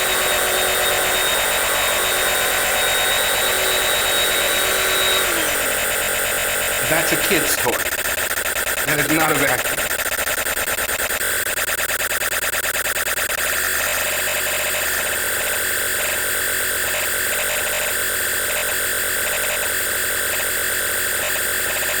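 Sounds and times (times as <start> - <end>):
stick vacuum motor running: 0.0 - 10.6.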